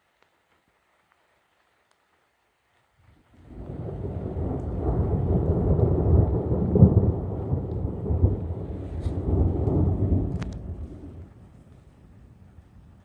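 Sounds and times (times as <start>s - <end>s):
rolling thunder: 3.4s - 13.0s.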